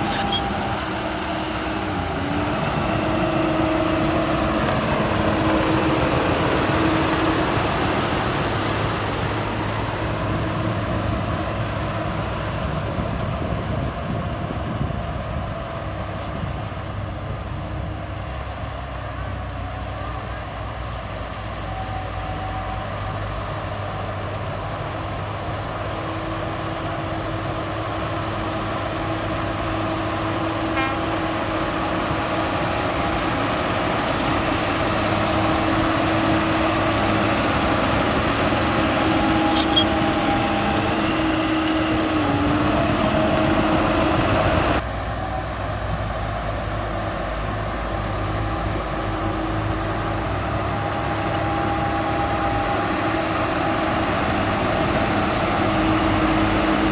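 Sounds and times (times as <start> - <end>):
diesel machinery running: 0.0 - 56.9
sharp metallic clinks: 38.3 - 42.1.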